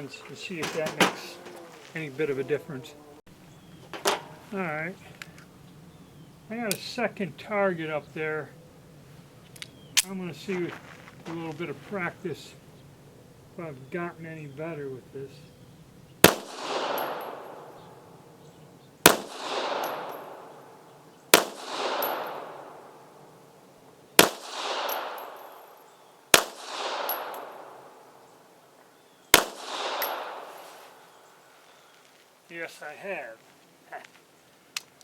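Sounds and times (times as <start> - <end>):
pistol shots with echo: 0.6 - 2.8, 15.9 - 28.5, 29.3 - 31.1.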